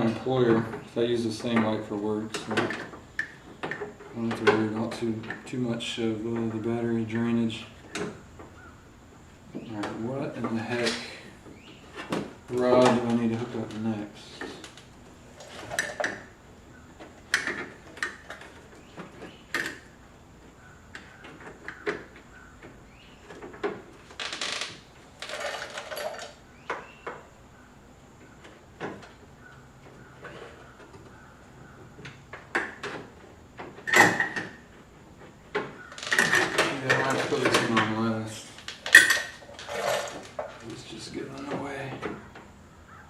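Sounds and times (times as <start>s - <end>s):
clicks and knocks of door parts: 0.0s - 5.5s, 7.8s - 8.6s, 17.0s - 20.0s, 20.9s - 27.3s, 28.2s - 40.7s, 41.3s - 42.6s
scraping rustles: 0.0s - 27.3s, 28.1s - 42.7s.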